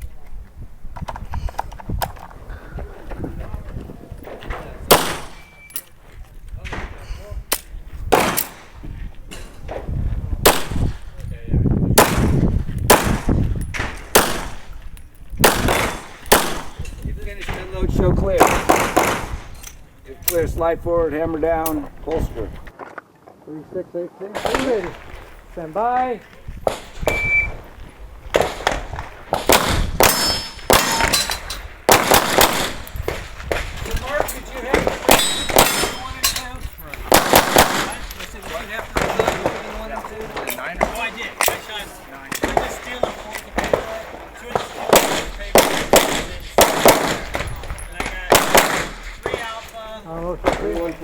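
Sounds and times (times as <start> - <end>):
pistol shots: 4.9 - 5.5, 7.5 - 8.8, 10.4 - 11.1, 12.0 - 14.8, 15.4 - 16.9, 18.3 - 19.6, 24.4 - 25.6, 26.6 - 27.6, 28.3 - 36.2, 37.0 - 49.6
shots ringing off steel targets: 4.9 - 5.8, 8.1 - 9.6, 28.3 - 49.7
shot timer beep: 27.0 - 27.6.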